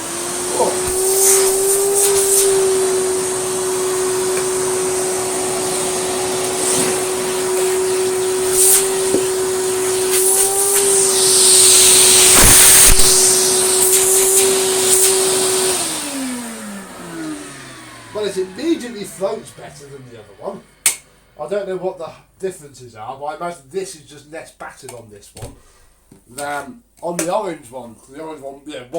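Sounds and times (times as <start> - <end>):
vacuum cleaner motor whine: 0.0 - 21.9.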